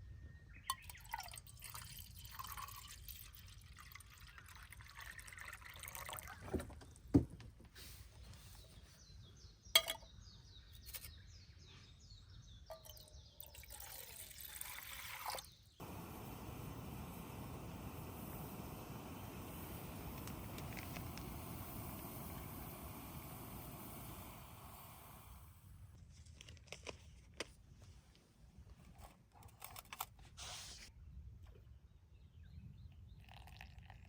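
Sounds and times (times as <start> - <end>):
water pouring and dripping: 0.8 - 6.8, 12.7 - 24.9
steady hiss: 15.8 - 25.8.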